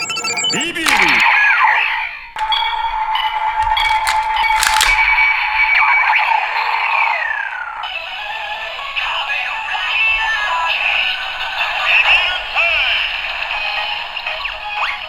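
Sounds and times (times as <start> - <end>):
toy electronic music: 0.0 - 1.2, 7.8 - 15.0
synthesized voice: 0.0 - 1.3.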